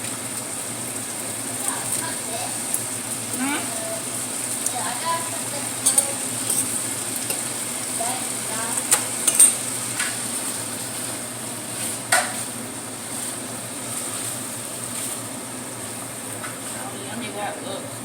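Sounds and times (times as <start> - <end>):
food sizzling in a frying pan: 0.0 - 18.0
utensil clicking against pan: 5.8 - 7.5.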